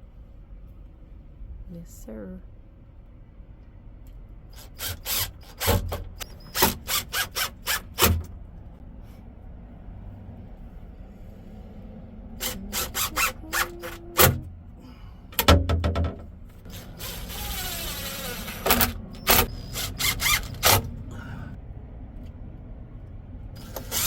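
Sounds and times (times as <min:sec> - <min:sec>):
heavy thumps: 0:15.3 - 0:17.8
clicks and knocks on cabinet doors: 0:15.4 - 0:16.2.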